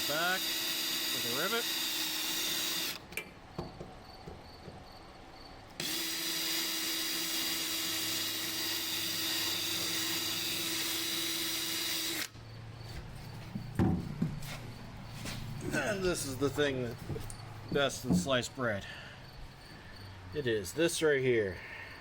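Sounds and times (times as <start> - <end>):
power drill drilling: 0.0 - 3.0, 5.8 - 12.3
knocks: 3.2 - 5.0, 13.5 - 14.4.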